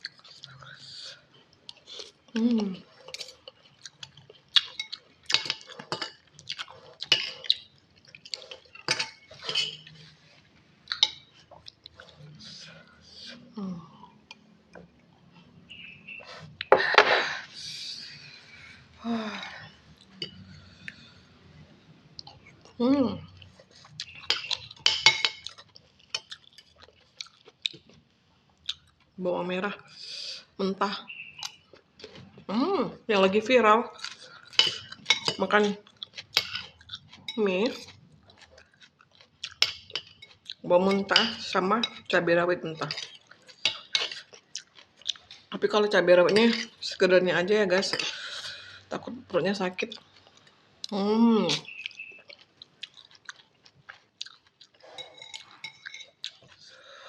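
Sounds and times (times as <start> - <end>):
cutlery clinking against bowl: 7.0 - 7.6, 8.4 - 10.0, 24.0 - 26.3, 34.6 - 35.4, 39.5 - 42.0, 42.8 - 44.3, 54.9 - 56.5.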